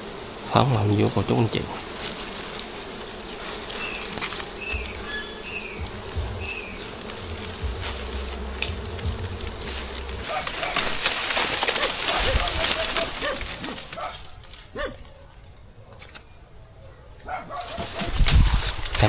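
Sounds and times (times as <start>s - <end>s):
bees buzzing: 0.0s - 14.4s
high falling chirps: 3.6s - 11.1s
low rumble: 4.8s - 10.4s.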